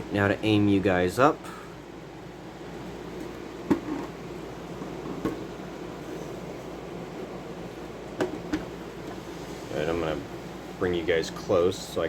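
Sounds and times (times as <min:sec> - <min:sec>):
steady room hum: 0:00.0 - 0:12.0.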